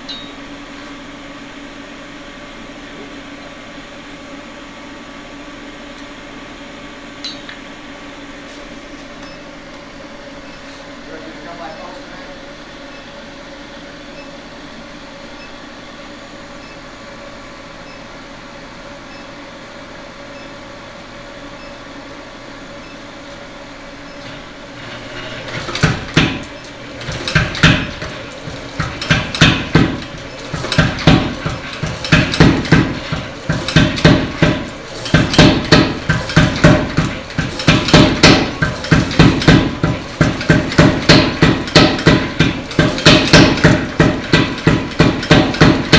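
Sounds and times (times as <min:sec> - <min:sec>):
hammer striking steel on anvil: 0:24.3 - 0:45.9.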